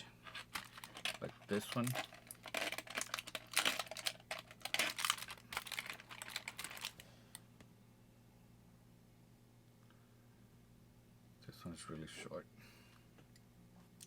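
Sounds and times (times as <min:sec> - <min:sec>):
toy wheels clicking and rattling: 0:00.4 - 0:07.0.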